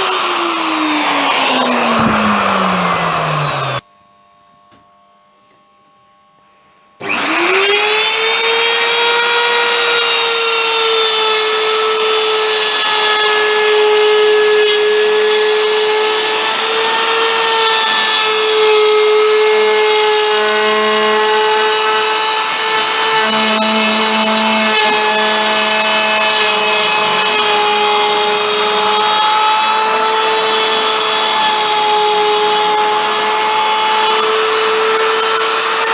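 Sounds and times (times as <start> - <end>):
electric router whining: 0.0 - 3.8, 7.0 - 35.9.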